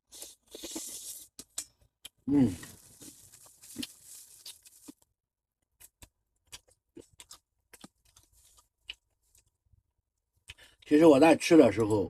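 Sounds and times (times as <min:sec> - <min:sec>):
chewing crunches: 0:00.1 - 0:05.1, 0:05.8 - 0:09.5
soft rustle: 0:02.6 - 0:04.9.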